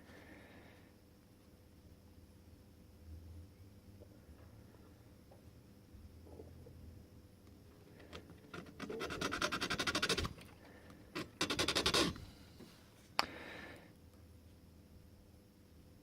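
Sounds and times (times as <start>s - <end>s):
metal scratching on key blank: 8.4s - 10.5s, 11.2s - 12.2s.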